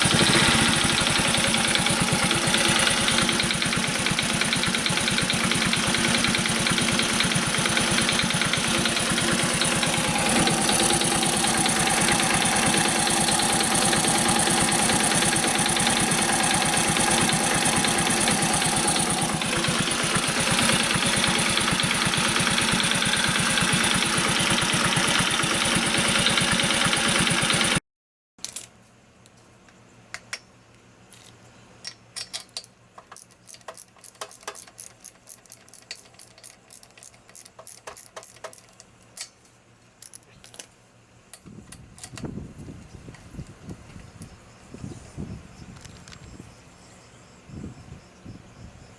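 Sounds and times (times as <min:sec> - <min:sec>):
motorcycle engine idling: 0:00.0 - 0:27.8.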